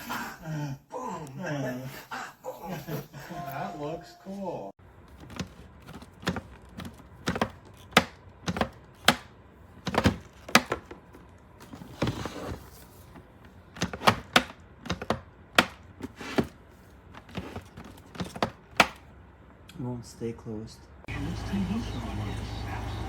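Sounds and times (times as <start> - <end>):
fridge door opening and shutting: 5.0 - 19.1
plastic clicks and knocks: 5.2 - 11.2, 13.8 - 16.5, 17.2 - 19.0.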